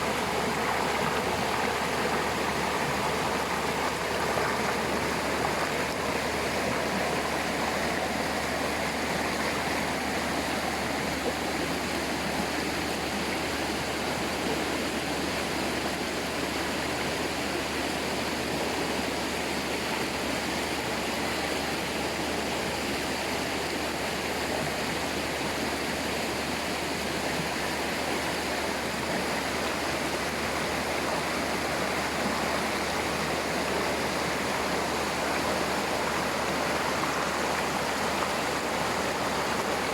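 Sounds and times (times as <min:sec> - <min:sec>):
water rushing over rocks: 0:00.0 - 0:13.7, 0:28.3 - 0:39.9.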